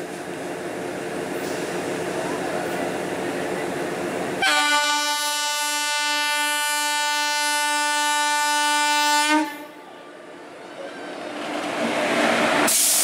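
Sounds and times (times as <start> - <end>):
train horn blast: 4.4 - 9.8.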